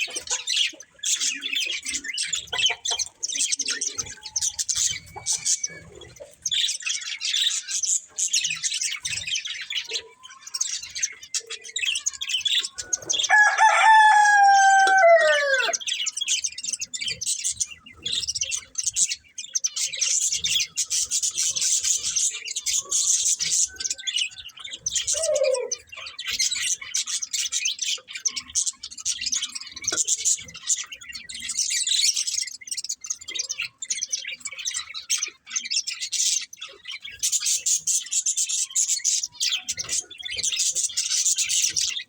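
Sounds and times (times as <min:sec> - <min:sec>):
budgerigars chirping and warbling: 0:00.0 - 0:42.0
long loud bird call: 0:09.8 - 0:16.1, 0:22.8 - 0:26.2.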